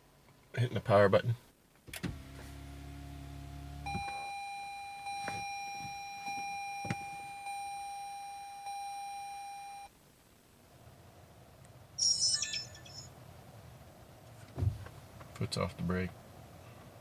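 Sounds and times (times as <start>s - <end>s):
low steady hum: 0.0s - 14.4s
dashboard warning chime: 3.8s - 9.9s, 12.0s - 13.1s.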